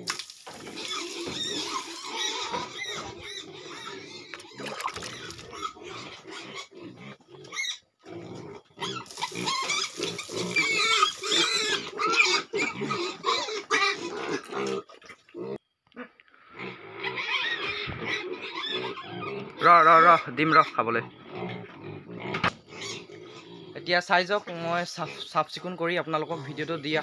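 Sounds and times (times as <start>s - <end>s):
pigs grunting and squealing: 0.0s - 27.0s.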